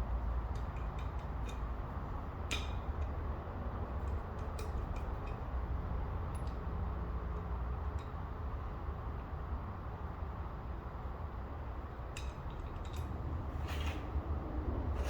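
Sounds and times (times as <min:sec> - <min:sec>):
tools clicking and tapping: 0:00.6 - 0:01.8, 0:02.5 - 0:03.1.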